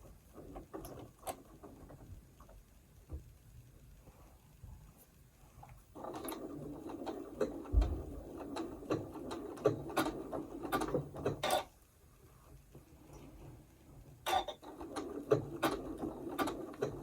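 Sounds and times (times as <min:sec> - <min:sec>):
sewing machine whirring and clicking: 0:00.0 - 0:02.7, 0:05.9 - 0:11.8, 0:13.1 - 0:17.0
low thump: 0:07.8 - 0:08.1.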